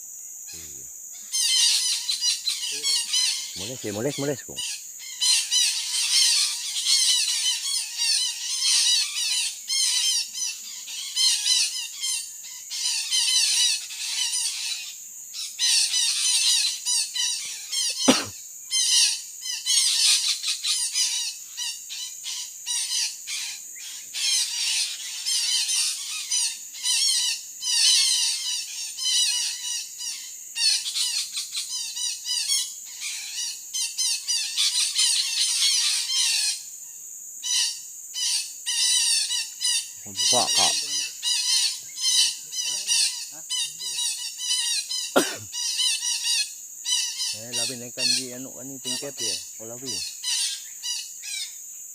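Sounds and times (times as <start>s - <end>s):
parakeets squawking: 1.3s - 10.1s, 17.6s - 19.1s, 38.3s - 50.6s.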